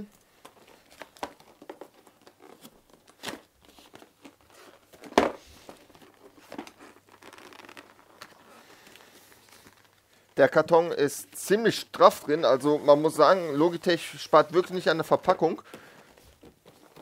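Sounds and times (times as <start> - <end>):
cardboard rustling and tearing: 0.3 - 10.0, 15.8 - 17.0.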